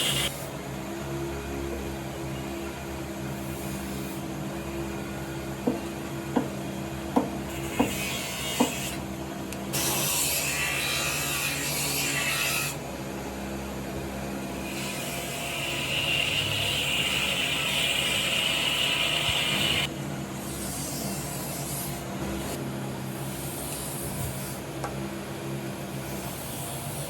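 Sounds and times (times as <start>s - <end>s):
light knocks on wood: 5.6s - 6.6s.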